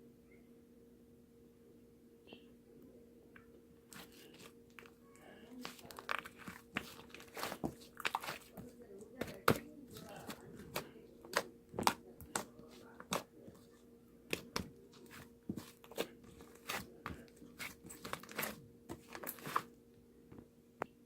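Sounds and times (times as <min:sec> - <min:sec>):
slime squished by hand: 0:05.6 - 0:08.6, 0:14.3 - 0:19.6.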